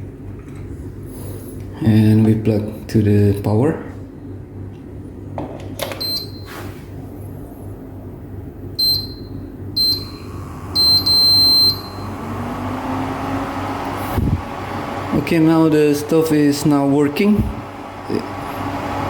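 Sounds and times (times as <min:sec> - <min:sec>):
cooker buzzer beeping: 0:06.0 - 0:06.5, 0:08.8 - 0:13.0.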